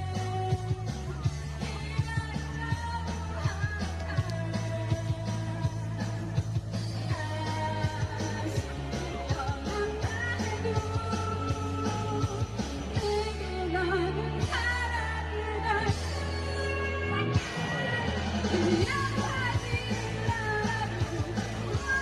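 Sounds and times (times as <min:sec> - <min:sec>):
bass line: 0:00.0 - 0:22.0
drumbeat: 0:18.3 - 0:22.0.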